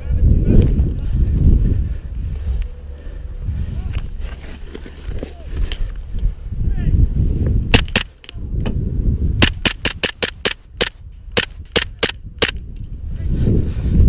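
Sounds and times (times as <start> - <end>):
low rumbling movement noise: 0.0 - 14.0
airsoft pistol shots: 7.7 - 8.2, 9.4 - 12.6.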